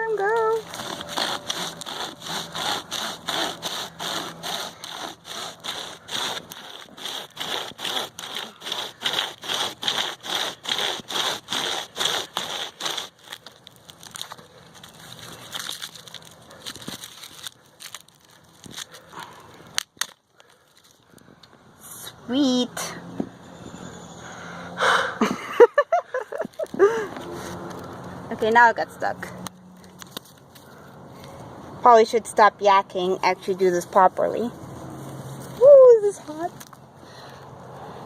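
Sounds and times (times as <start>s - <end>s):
hand chainsaw cutting log: 0.0s - 20.9s.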